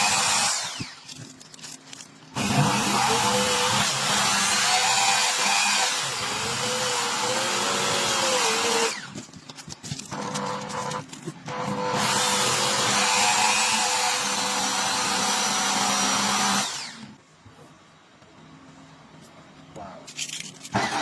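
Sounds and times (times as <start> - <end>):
electric power tool running: 0.0 - 1.0, 2.4 - 9.2, 10.1 - 17.1, 20.7 - 21.0.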